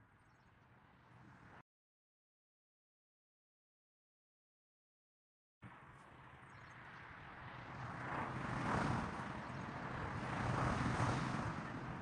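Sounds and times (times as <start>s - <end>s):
strong wind: 6.2s - 12.0s.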